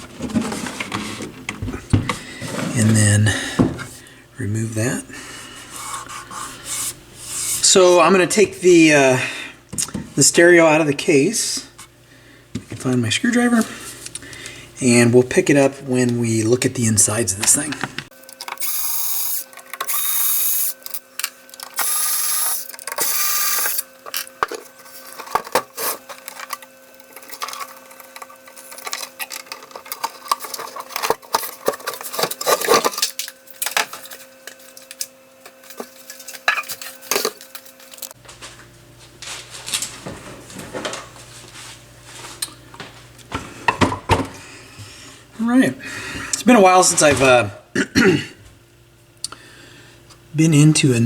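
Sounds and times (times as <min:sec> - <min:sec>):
electric screwdriver whirring: 0:18.2 - 0:24.3.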